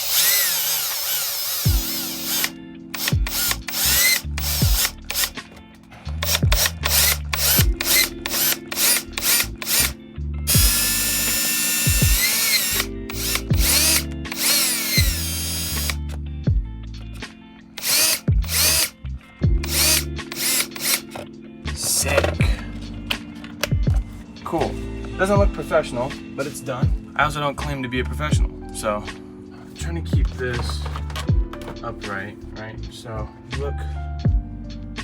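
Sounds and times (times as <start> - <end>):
electric drill running: 0.0 - 5.4, 6.2 - 16.2, 17.8 - 19.0, 19.6 - 21.2
background music with bass: 1.2 - 35.0.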